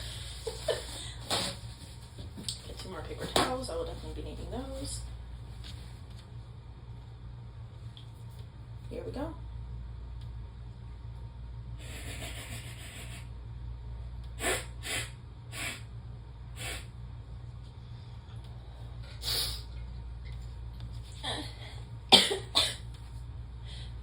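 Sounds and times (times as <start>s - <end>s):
long hissing sniff: 11.8s - 13.3s, 14.4s - 15.9s, 16.6s - 16.9s, 19.2s - 19.7s
short sharp nasal sniffs: 14.4s - 15.9s, 16.6s - 16.9s, 19.2s - 19.7s.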